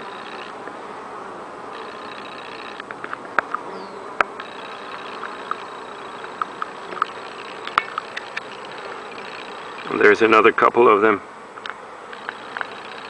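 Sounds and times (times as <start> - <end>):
sharp ticks: 0.0 - 0.8, 1.7 - 3.6, 4.2 - 10.4, 11.6 - 13.0
single bee buzzing past: 0.0 - 13.0
steady buzz of many bees: 0.0 - 13.0.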